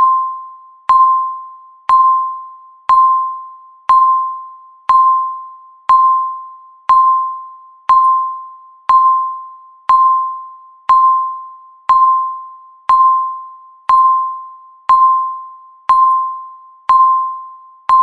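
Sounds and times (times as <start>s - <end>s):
electronic timer beeps: 0.0s - 18.0s.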